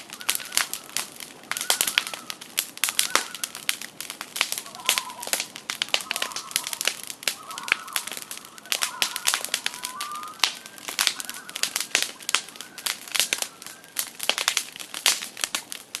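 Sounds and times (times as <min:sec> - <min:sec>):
campfire crackling and popping: 0:00.0 - 0:16.0
loon calling: 0:00.0 - 0:16.0.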